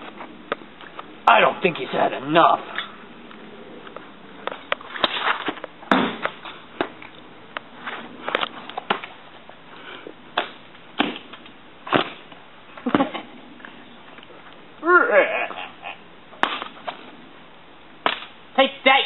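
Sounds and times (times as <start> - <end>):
knocks and thumps of hits: 5.9 - 6.9.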